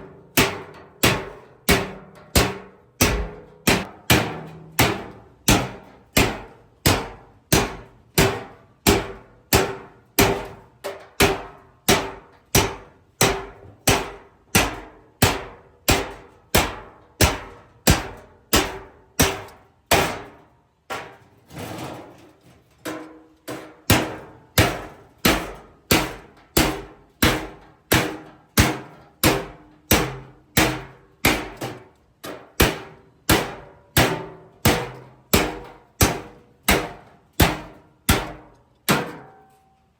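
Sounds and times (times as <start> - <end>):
hammer striking sheet steel: 0.2 - 10.6, 23.9 - 39.4.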